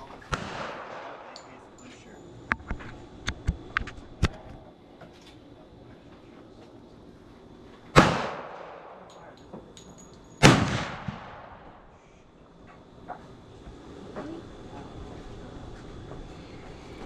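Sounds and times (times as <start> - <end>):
gunshots with long echo: 0.3 - 1.4, 7.9 - 9.1, 10.4 - 12.0.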